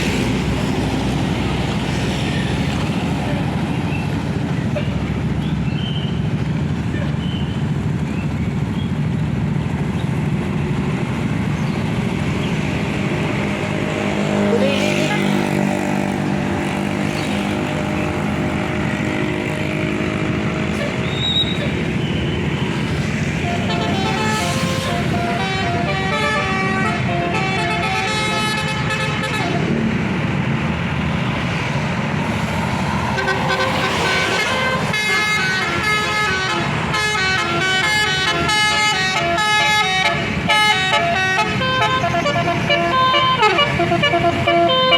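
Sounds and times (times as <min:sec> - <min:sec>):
road and engine noise: 0:00.0 - 0:44.9
musical air horn: 0:23.4 - 0:29.7, 0:33.2 - 0:44.9.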